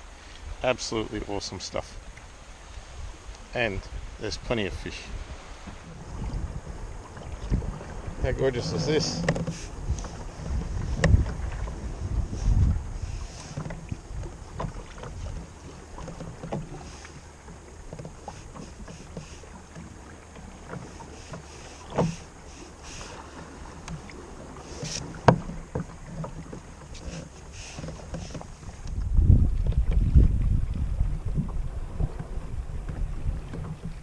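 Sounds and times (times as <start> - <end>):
water lapping around a kayak: 0.0 - 34.0
wind on microphone: 2.5 - 34.0
small knocks: 9.0 - 11.3, 17.9 - 22.2, 24.8 - 28.5.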